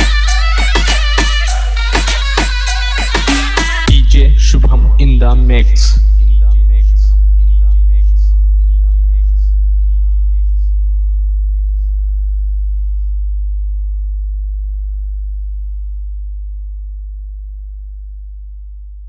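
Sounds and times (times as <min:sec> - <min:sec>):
echoing vocal sample: 0:00.0 - 0:08.4
deep sub-bass sine tone: 0:03.9 - 0:19.0.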